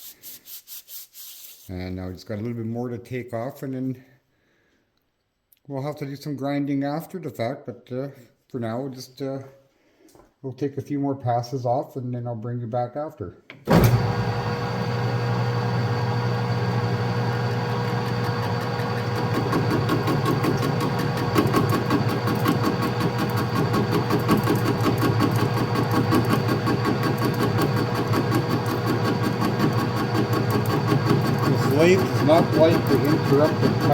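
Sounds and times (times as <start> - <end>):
metal lathe running: 13.7 - 33.9.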